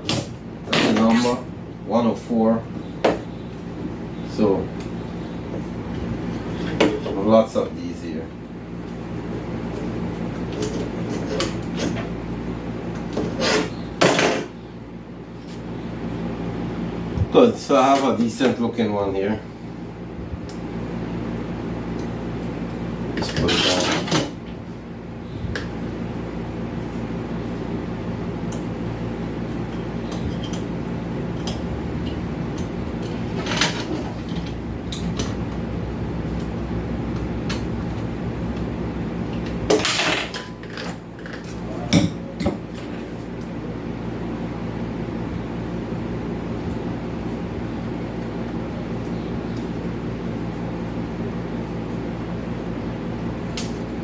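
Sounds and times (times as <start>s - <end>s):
steady low hum: 0.0s - 54.0s
tool scraping: 13.2s - 14.4s, 23.2s - 24.3s.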